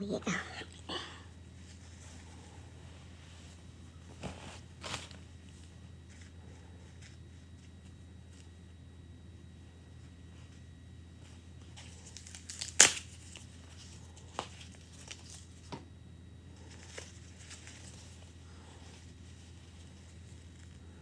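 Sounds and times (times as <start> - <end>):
crinkling and rustling: 1.6 - 8.7, 11.2 - 15.8, 16.6 - 20.9.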